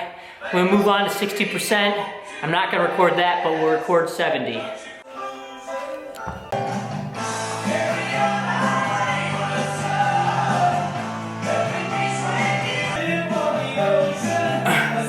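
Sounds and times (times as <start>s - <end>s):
rock music with singing: 4.4s - 15.0s.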